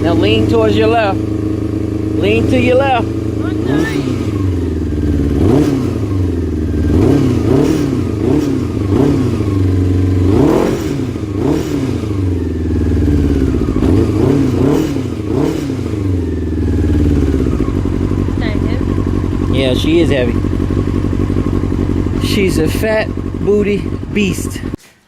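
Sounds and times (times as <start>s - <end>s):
motorcycle engine revving: 0.0s - 24.8s
person talking: 2.2s - 4.2s.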